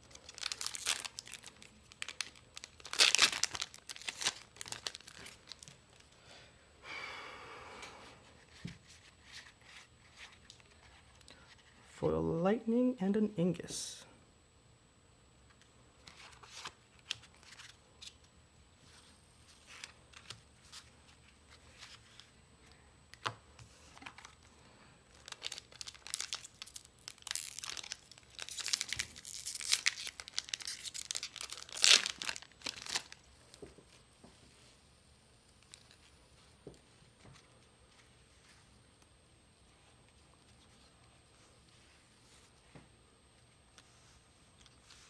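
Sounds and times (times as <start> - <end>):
foil wrapper crinkling and tearing: 0.0 - 6.1, 25.1 - 33.3.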